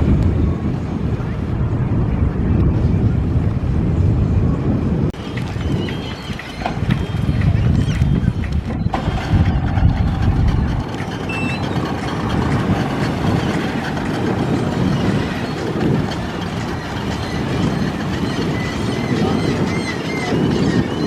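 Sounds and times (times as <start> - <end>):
wind: 0.0 - 21.0
heavy low rumble: 6.6 - 20.9
vehicle engine: 8.6 - 18.5.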